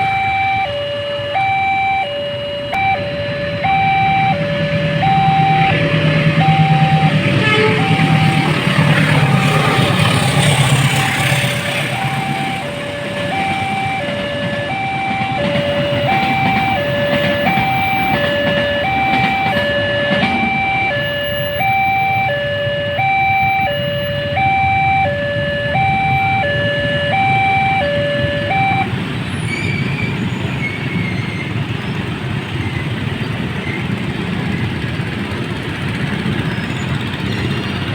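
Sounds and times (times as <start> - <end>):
two-tone level-crossing alarm: 0.0 - 29.0.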